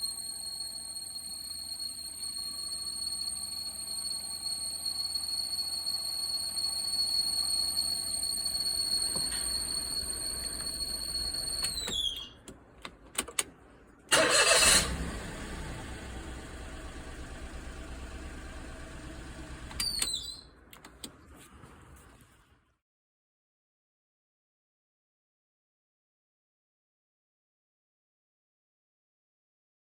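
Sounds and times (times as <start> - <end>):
engine running with high whine: 14.2 - 20.1.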